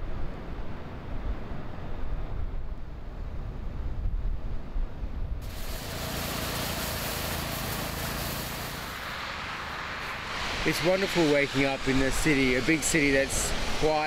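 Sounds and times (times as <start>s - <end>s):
steady hiss: 5.4s - 14.0s.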